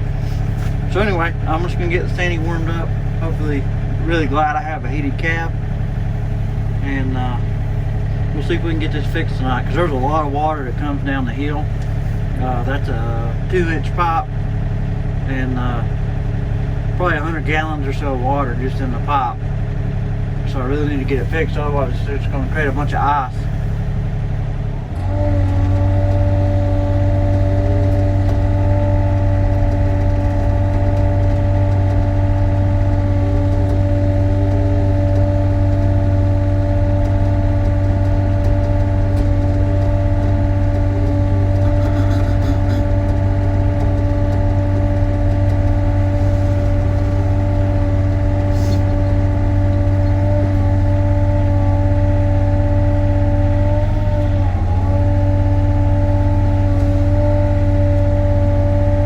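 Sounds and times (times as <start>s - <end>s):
excavator diesel engine running: 0.0s - 59.0s.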